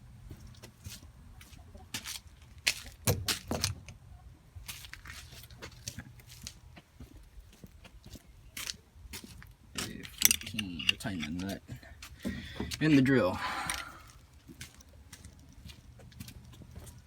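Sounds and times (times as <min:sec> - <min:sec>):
low steady hum: 0:00.0 - 0:17.0
metal tools clinking: 0:09.8 - 0:11.8.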